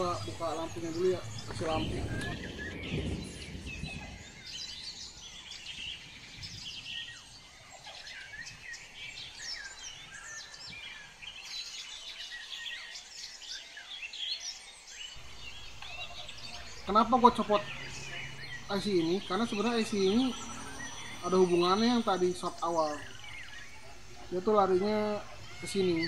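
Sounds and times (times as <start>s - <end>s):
small birds chirping: 0.0s - 26.0s
faint low hum: 15.2s - 26.0s.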